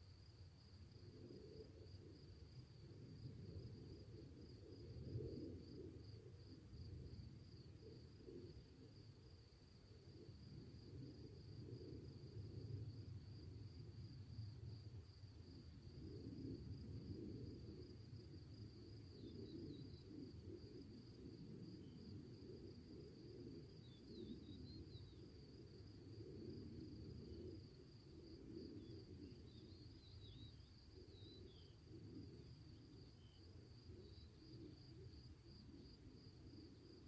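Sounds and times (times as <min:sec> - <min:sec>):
faint bird chirps: 0:28.8 - 0:31.8.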